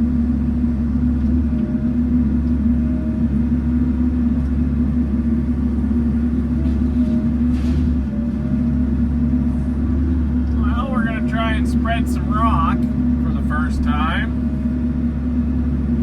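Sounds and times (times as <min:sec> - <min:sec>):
engine droning: 0:00.0 - 0:16.0.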